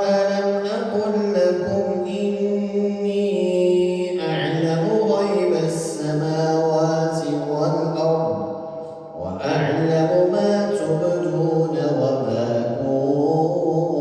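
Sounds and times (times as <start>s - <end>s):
man chanting over loudspeakers: 0.0s - 14.0s.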